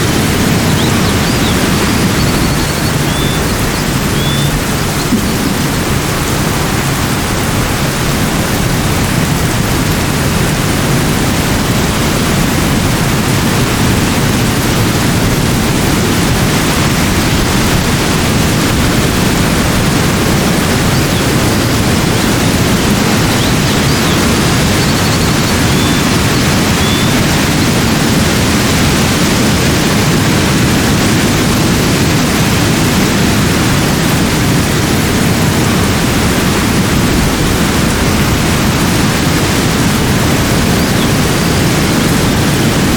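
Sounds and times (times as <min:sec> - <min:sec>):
rushing falling water: 0:00.0 - 0:42.9
faint high chirps: 0:00.6 - 0:06.2, 0:20.8 - 0:27.2.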